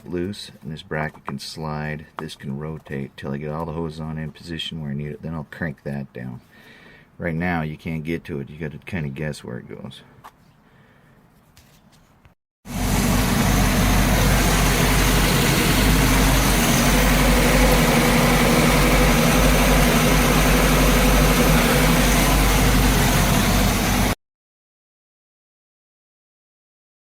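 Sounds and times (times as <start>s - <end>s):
boat engine idling: 12.7s - 24.2s.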